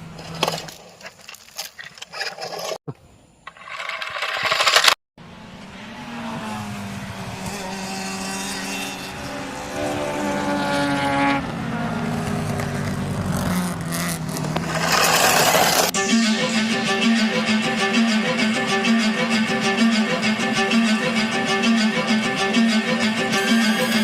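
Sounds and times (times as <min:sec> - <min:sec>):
race car engine revving: 0:05.2 - 0:24.0.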